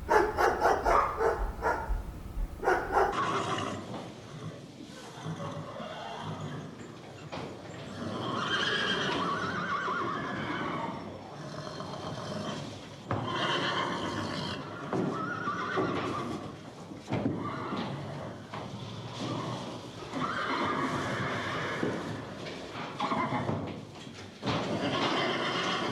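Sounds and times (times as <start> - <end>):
horse whinnying: 15.2 - 16.0, 20.2 - 21.8.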